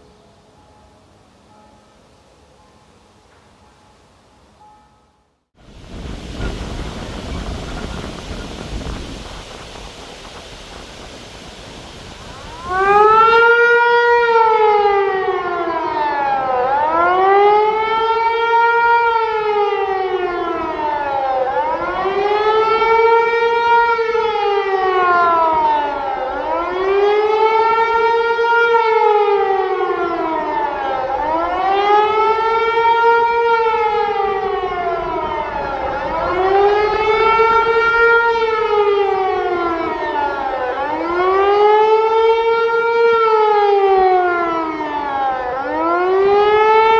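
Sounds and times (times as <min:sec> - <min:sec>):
rising and falling warning siren: 0:05.6 - 0:46.9.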